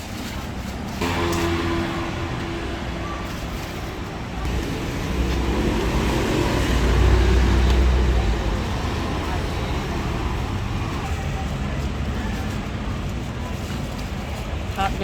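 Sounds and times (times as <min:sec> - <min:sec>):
vehicle engine rumbling: 0:00.0 - 0:15.0.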